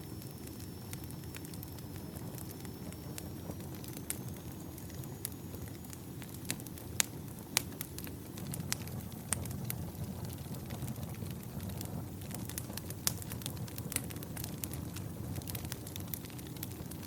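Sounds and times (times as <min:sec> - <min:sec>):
campfire crackling and popping: 0:00.0 - 0:17.0
low rumble of flame: 0:00.0 - 0:17.0.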